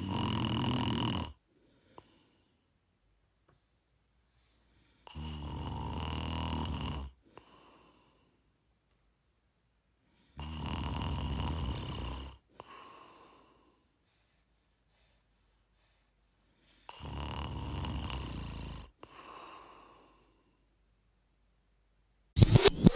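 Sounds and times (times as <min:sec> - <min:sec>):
person snoring: 0:00.0 - 0:01.4, 0:05.0 - 0:08.2, 0:10.3 - 0:13.6, 0:16.9 - 0:20.2.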